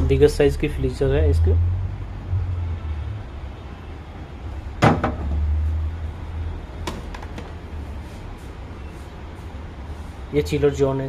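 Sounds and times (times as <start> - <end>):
low steady rumble: 0.0 - 6.8.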